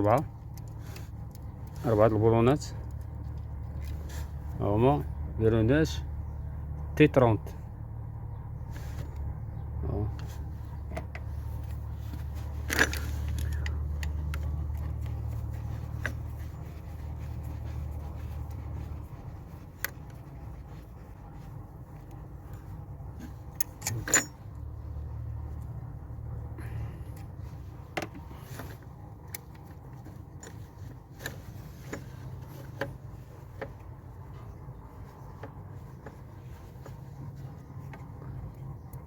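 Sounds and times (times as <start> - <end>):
low hum: 0.2 - 39.0
hand tools clicking on metal: 23.6 - 24.4.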